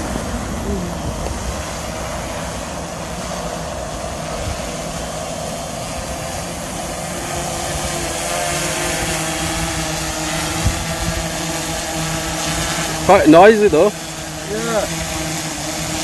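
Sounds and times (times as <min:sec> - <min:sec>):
drone propellers whirring: 0:00.0 - 0:16.0.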